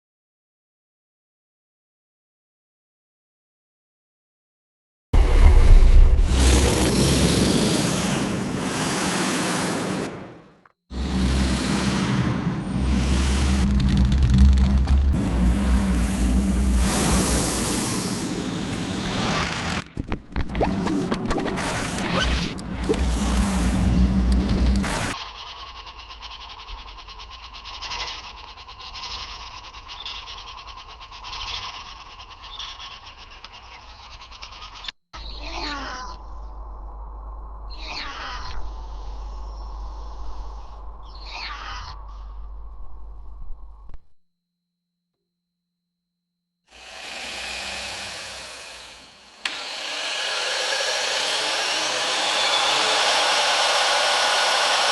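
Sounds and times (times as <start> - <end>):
steady rushing blowing noise: 11.1 - 19.1.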